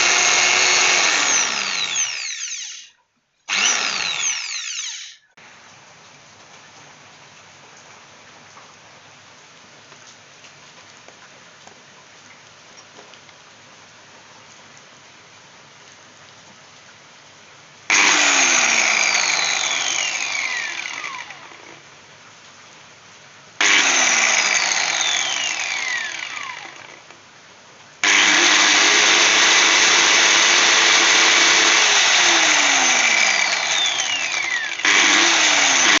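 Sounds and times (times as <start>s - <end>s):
power tool motor whining: 0.0s - 5.2s, 17.9s - 21.8s, 23.6s - 27.0s, 28.0s - 36.0s.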